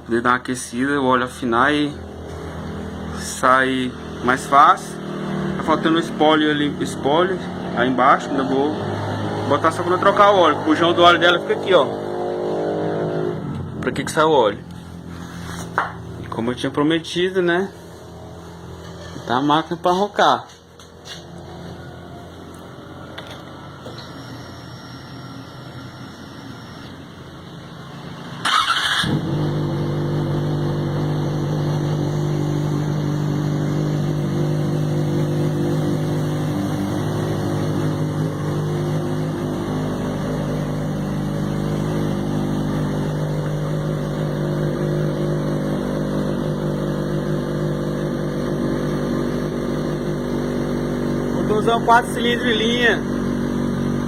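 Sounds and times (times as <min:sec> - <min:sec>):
motorcycle engine idling: 0:20.7 - 0:54.0
motorcycle engine starting: 0:21.0 - 0:54.0.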